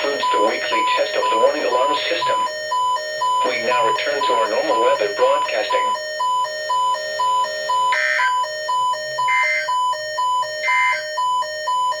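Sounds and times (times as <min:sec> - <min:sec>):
high pulsing alert beeps: 0:09.2 - 0:10.0, 0:10.6 - 0:11.2.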